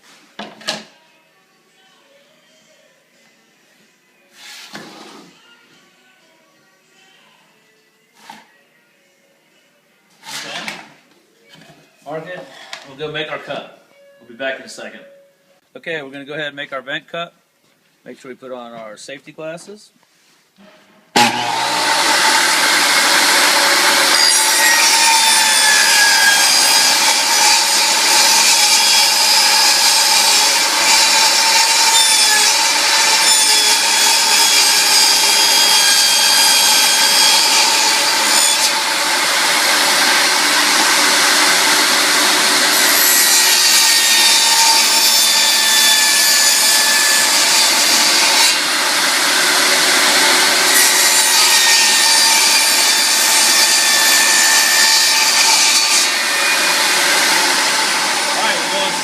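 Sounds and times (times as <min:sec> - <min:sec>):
power saw cutting floor plank: 0:21.2 - 0:59.0.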